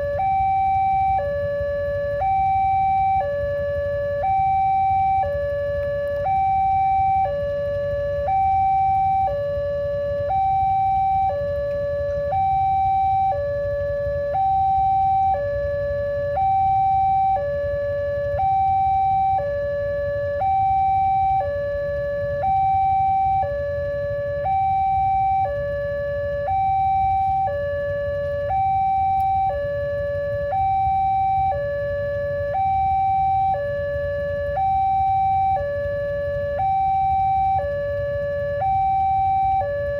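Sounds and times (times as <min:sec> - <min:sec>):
level crossing warning siren: 0:00.0 - 0:39.9.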